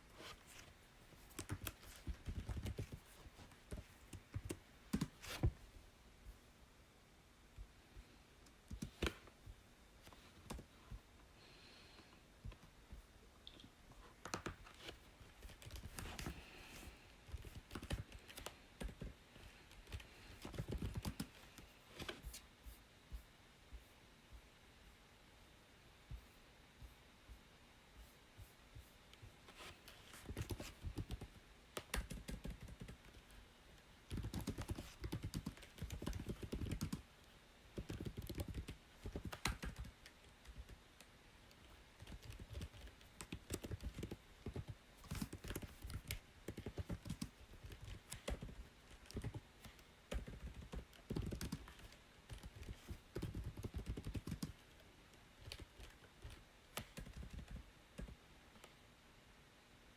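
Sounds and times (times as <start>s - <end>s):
typing on computer keyboard: 17.3s - 19.2s, 19.8s - 21.4s, 30.2s - 33.3s, 34.1s - 37.0s, 37.8s - 40.8s, 42.0s - 54.7s, 55.4s - 58.2s.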